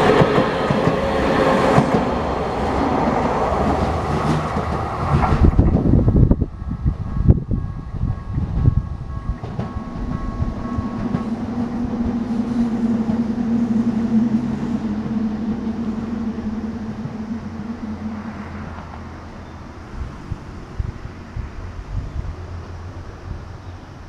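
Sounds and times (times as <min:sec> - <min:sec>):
train running hum: 0:00.0 - 0:24.0
crossing warning bell: 0:05.9 - 0:20.1.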